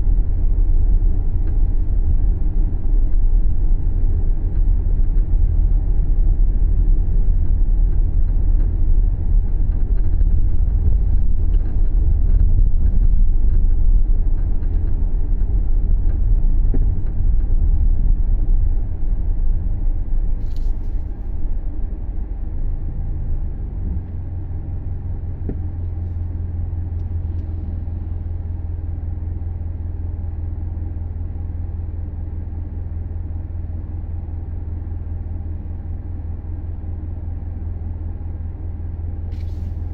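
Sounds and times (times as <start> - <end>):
car road and engine rumble: 0.0 - 39.9
sharp click: 20.4 - 20.9.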